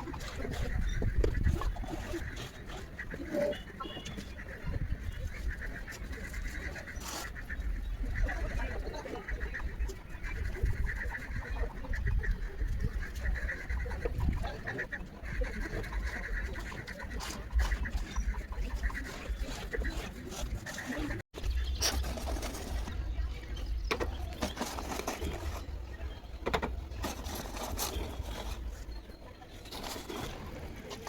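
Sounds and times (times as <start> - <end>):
birds chirping: 0.0 - 31.0.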